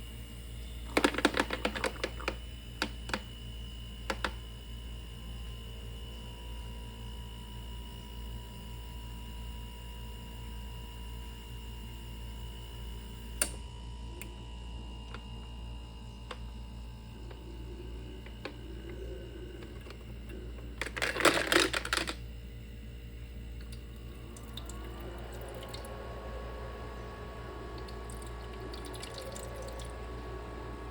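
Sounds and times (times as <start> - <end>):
low hum: 13.5 - 30.9
clicks: 18.1 - 22.2.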